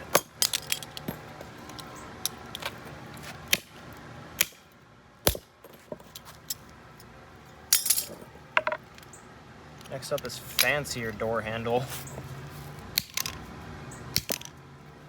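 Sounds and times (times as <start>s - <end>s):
metal parts jangling: 0.1s - 2.7s, 7.7s - 9.1s.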